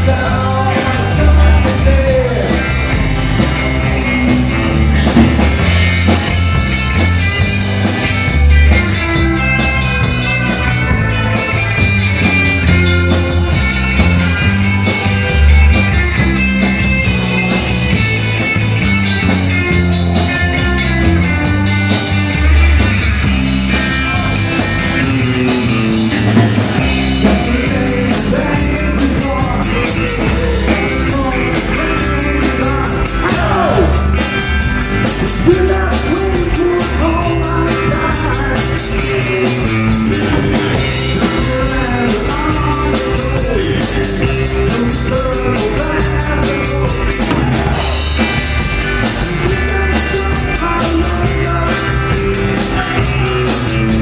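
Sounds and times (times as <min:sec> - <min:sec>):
drum kit beat: 0:00.0 - 0:54.0
electric guitar: 0:00.0 - 0:54.0
rock band playing: 0:00.0 - 0:54.0.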